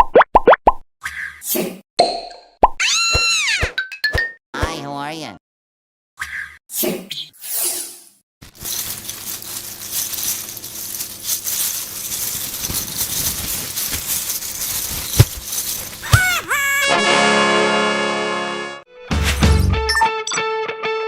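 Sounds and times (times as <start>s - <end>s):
small hard pieces clinking: 8.6s - 16.6s.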